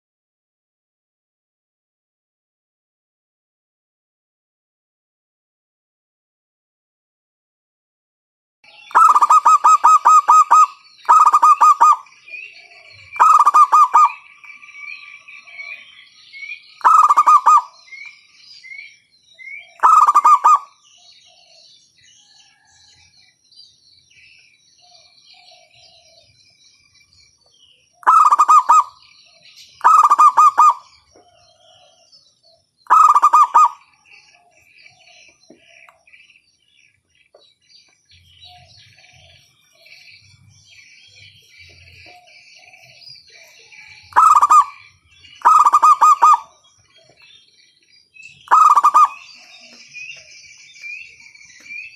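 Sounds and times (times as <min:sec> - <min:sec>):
small birds chirping: 0:08.6 - 0:51.9
dove cooing trills: 0:08.7 - 0:18.6, 0:19.5 - 0:22.7, 0:24.8 - 0:26.5, 0:27.9 - 0:35.9, 0:38.2 - 0:47.3, 0:48.2 - 0:51.9.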